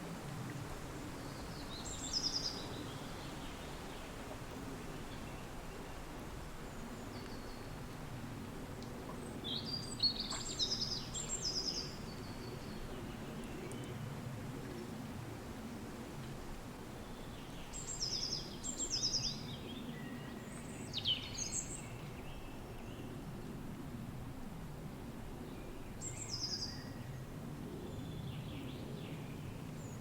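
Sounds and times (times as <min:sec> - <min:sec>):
steady wind: 0:00.0 - 0:30.0
songbird singing: 0:09.2 - 0:14.0, 0:17.0 - 0:23.1, 0:25.6 - 0:27.1.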